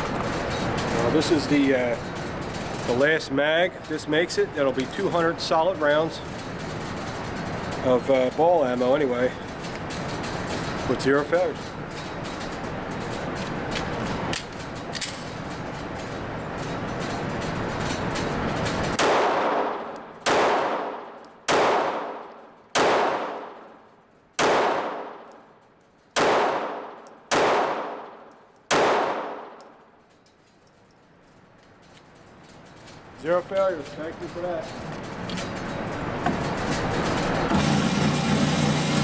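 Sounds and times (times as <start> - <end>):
pistol shots: 19.0 - 23.6, 24.4 - 25.3, 26.2 - 29.6.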